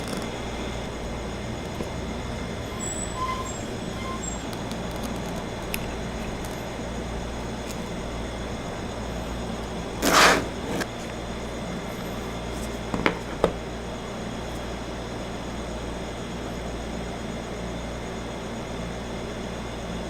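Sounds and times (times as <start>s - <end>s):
steady background noise: 0.0s - 20.0s
loud brief scrape: 10.0s - 10.9s.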